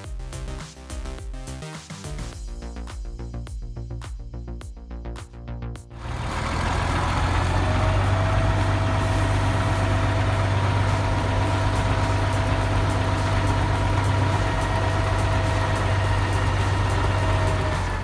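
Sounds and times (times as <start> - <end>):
diesel engine humming: 6.0 - 18.0
thin steady whine: 7.6 - 18.0.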